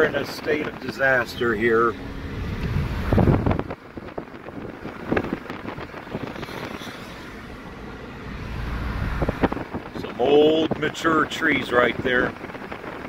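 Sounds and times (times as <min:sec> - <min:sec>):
car road noise rumble: 0:00.0 - 0:13.0
wind on the microphone: 0:00.0 - 0:13.0.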